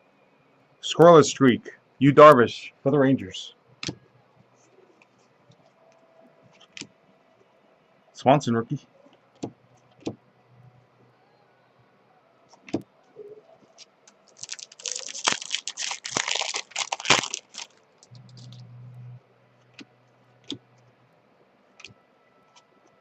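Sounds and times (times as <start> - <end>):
cards clicking: 14.1 - 18.5
foil wrapper crinkling and tearing: 14.2 - 18.5.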